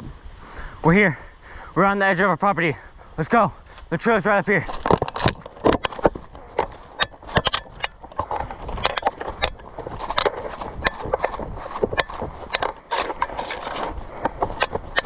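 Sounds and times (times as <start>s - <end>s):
brush rustling: 2.9s - 15.0s
footsteps crunching on forest floor: 3.6s - 15.0s.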